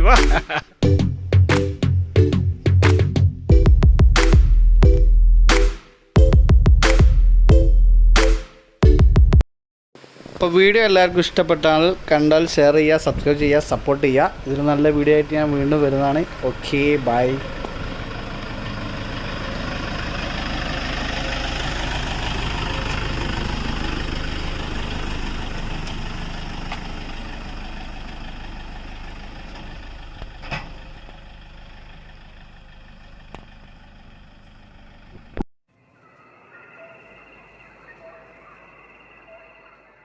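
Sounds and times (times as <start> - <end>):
vehicle engine running: 13.2 - 35.4.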